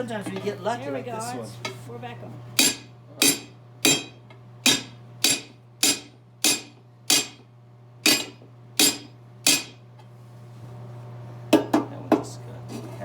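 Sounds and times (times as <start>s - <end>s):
hammer ringing on steel rim: 2.6s - 7.4s.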